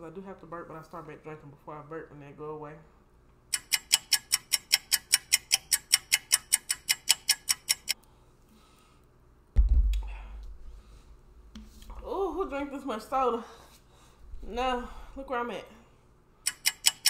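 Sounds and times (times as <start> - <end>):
clock ticking: 3.5 - 8.0, 16.5 - 17.0
loud low thump and rumble: 9.6 - 10.7.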